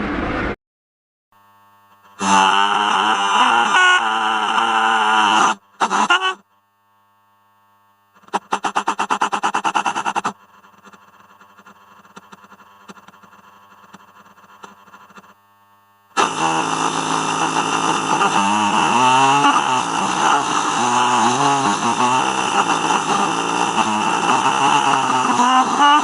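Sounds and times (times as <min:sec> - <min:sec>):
rough wavering creature sound: 0:02.2 - 0:06.4, 0:08.3 - 0:11.0
rapid pulsing rattle: 0:08.2 - 0:15.3.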